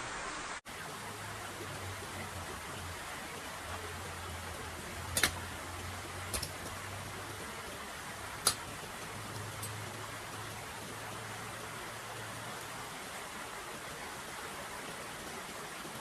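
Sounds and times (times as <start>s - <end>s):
steady outdoor hiss: 0.0s - 16.0s
sharp snaps: 5.0s - 5.6s, 6.3s - 6.9s, 8.4s - 9.8s.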